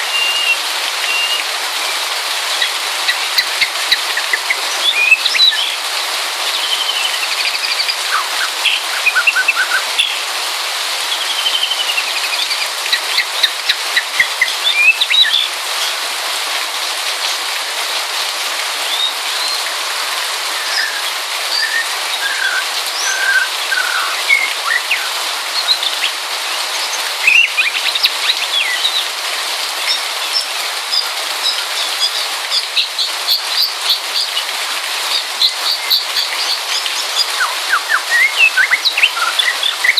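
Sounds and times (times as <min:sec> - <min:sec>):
light rain patter: 0:00.0 - 0:39.9
bird singing whistled notes: 0:00.1 - 0:01.4, 0:03.4 - 0:05.8, 0:06.6 - 0:10.2, 0:11.2 - 0:12.6, 0:20.5 - 0:26.0, 0:27.2 - 0:29.0, 0:35.4 - 0:39.9.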